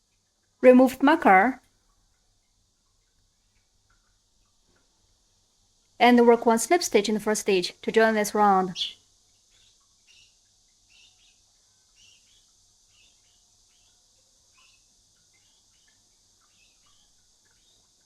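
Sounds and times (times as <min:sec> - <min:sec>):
faint high chirps: 0:09.6 - 0:18.0.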